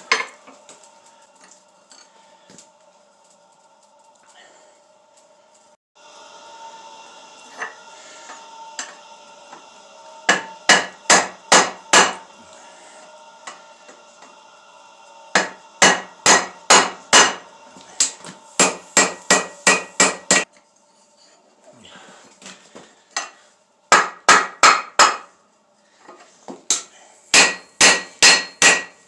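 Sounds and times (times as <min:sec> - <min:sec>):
steady hum: 0:00.0 - 0:20.5
hammer striking steel on anvil: 0:10.3 - 0:12.3, 0:15.3 - 0:20.5, 0:23.2 - 0:25.3, 0:26.7 - 0:29.0.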